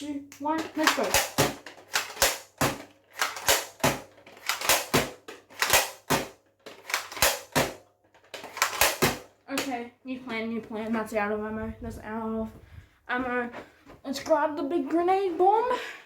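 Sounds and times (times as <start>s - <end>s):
foam-dart blaster firing: 0.8s - 7.8s, 8.5s - 9.3s.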